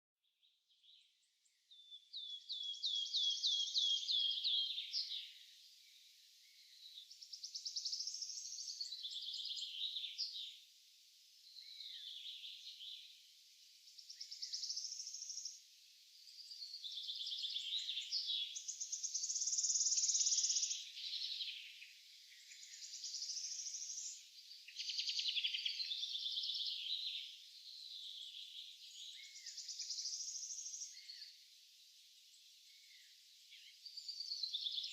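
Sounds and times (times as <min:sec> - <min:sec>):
songbirds trilling and chirping: 0:00.4 - 0:34.9.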